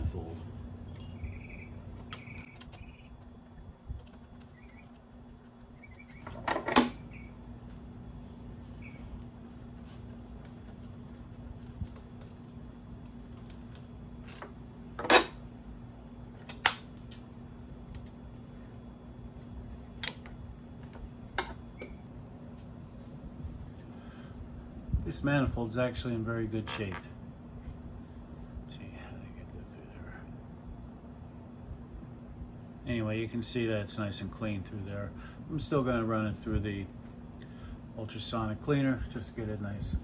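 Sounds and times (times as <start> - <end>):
steady low hum: 0.0 - 40.0
tools and metal parts clinking: 0.9 - 1.3, 2.0 - 3.3, 6.0 - 7.1, 11.4 - 15.4, 16.3 - 22.0.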